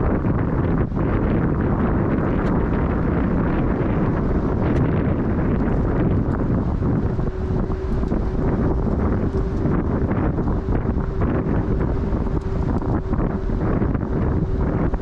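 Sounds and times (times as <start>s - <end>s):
faint steady hum: 0.0s - 15.0s
wind buffeting microphone: 0.0s - 15.0s.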